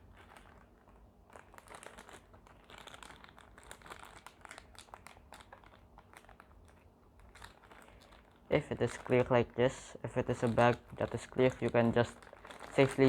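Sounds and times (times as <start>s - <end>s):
plastic bag crinkling: 0.0s - 13.0s.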